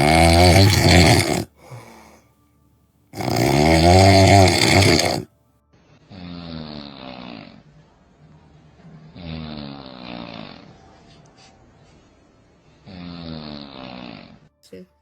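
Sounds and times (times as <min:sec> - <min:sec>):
person snoring: 0:00.0 - 0:02.2, 0:03.2 - 0:05.3, 0:06.1 - 0:07.6, 0:09.2 - 0:10.8, 0:12.8 - 0:14.5
faint breath: 0:01.5 - 0:02.4.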